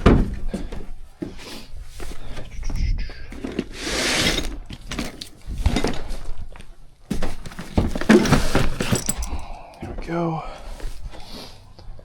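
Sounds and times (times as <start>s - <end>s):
gear rustling and scraping: 7.4s - 9.4s.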